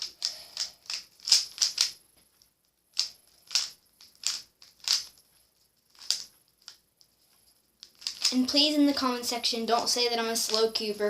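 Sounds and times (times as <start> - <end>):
puzzle cube layers clacking: 0.0 - 8.6.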